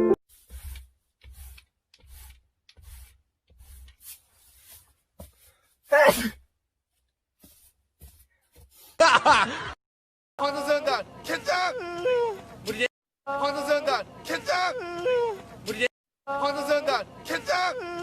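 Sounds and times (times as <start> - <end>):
person sneezing: 5.9 - 6.4.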